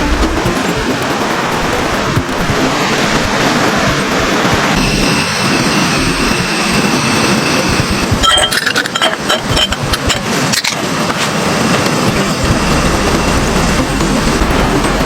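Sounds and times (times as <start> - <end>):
strong wind buffeting: 0.0 - 15.0.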